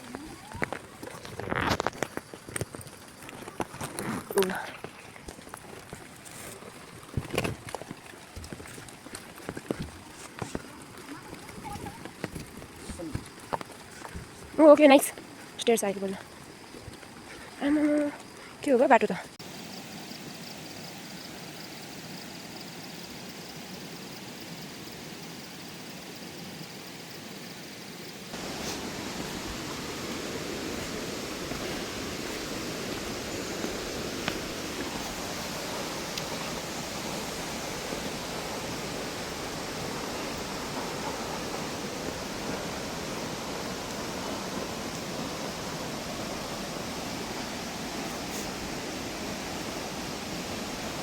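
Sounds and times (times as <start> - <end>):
running water: 0.0 - 25.0, 26.4 - 51.0.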